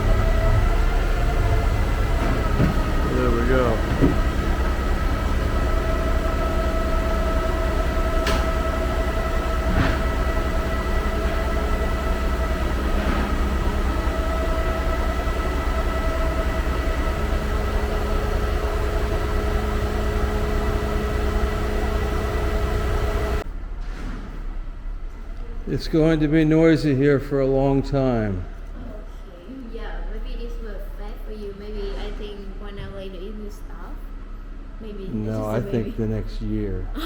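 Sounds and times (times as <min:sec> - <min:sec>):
concrete pump truck droning: 0:00.0 - 0:29.2.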